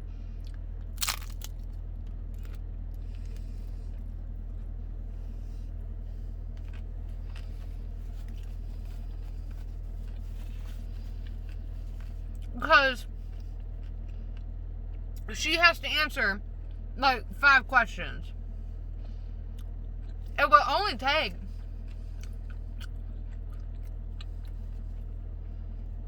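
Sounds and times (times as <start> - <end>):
car interior hum: 0.0 - 26.0
person eating clicks: 0.5 - 1.6
sharp crunch: 0.8 - 2.5.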